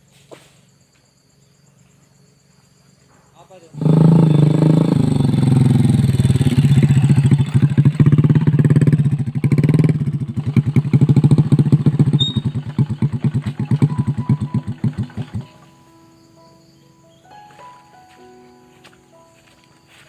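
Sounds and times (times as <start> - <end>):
motorcycle engine running hard: 3.7 - 15.6.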